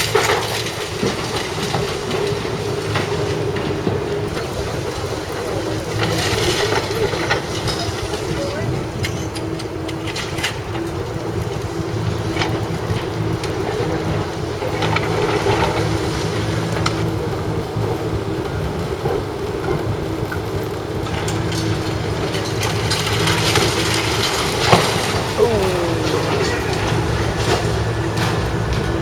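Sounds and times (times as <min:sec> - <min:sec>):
heavy machinery humming: 0:21.2 - 0:29.0.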